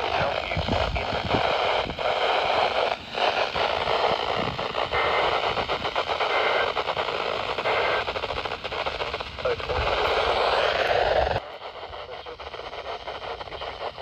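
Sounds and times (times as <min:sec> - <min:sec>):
broadcast voice: 0:00.0 - 0:03.6, 0:07.5 - 0:08.2, 0:09.4 - 0:13.9
radio static hiss and crackle: 0:00.0 - 0:14.0.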